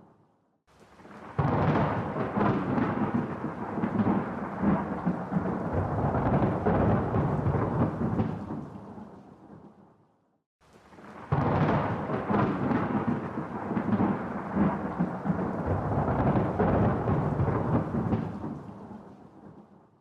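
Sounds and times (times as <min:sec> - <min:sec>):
thunder rumbling: 0:00.9 - 0:09.7, 0:10.8 - 0:19.6.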